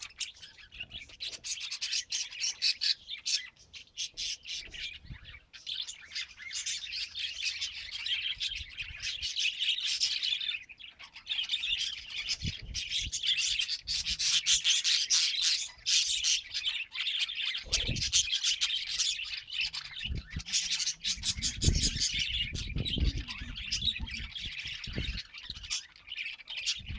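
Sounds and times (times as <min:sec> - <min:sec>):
budgie chattering: 0:17.6 - 0:24.8.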